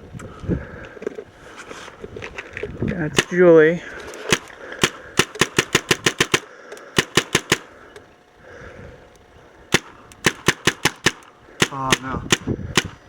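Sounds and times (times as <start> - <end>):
paintball markers firing: 3.1 - 7.7, 9.7 - 13.0.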